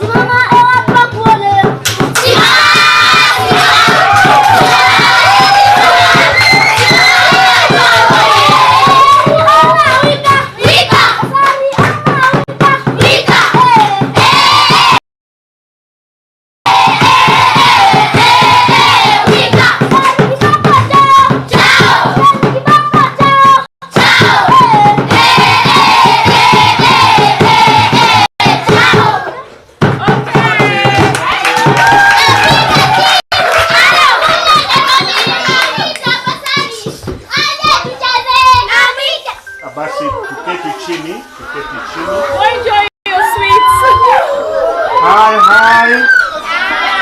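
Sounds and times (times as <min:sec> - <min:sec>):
rhythmic hand-clapping: 0:00.0 - 0:15.0, 0:16.7 - 0:38.8
hand-clapping in time: 0:01.7 - 0:13.0, 0:30.9 - 0:38.1.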